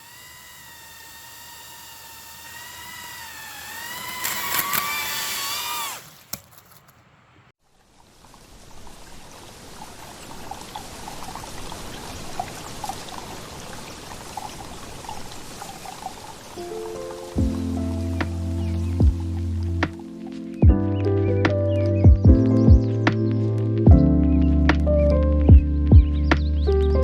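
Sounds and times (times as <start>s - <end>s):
drone motors whining: 0.0s - 6.8s, 16.7s - 20.2s
stream rushing and trickling: 7.6s - 20.2s.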